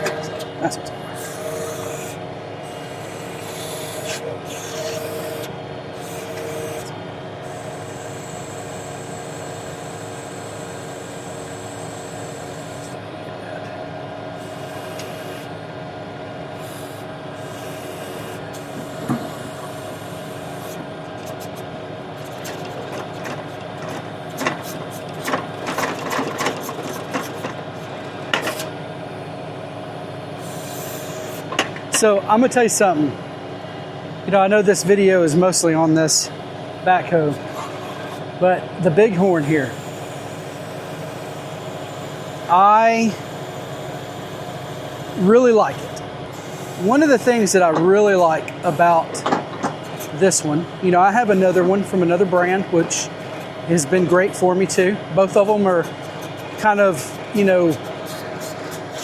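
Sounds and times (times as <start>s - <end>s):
tractor engine running: 18.4s - 30.4s, 36.4s - 59.0s
backhoe knocks and scrapes: 22.4s - 27.7s.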